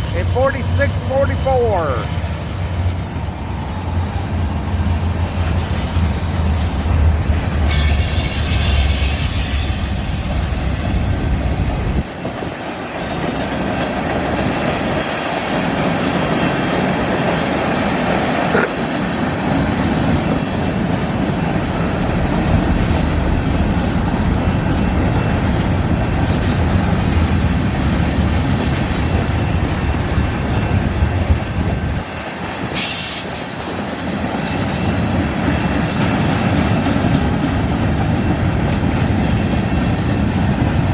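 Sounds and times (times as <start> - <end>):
diesel locomotive rumble: 0.0 - 40.9
freight cars rolling on rails: 0.0 - 40.9
high wheel squeals: 7.6 - 11.3.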